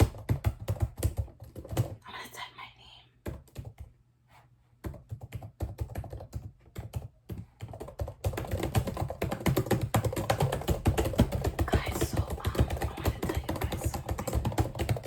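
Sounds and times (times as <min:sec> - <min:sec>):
sharp clicks and taps: 0:08.3 - 0:15.0.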